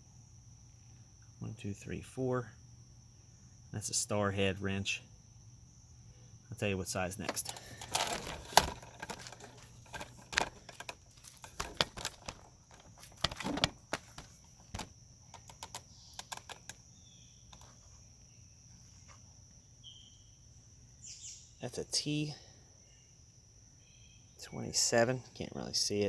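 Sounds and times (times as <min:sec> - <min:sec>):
high insect drone: 0:00.0 - 0:26.0
faint bird chirps: 0:15.2 - 0:25.0.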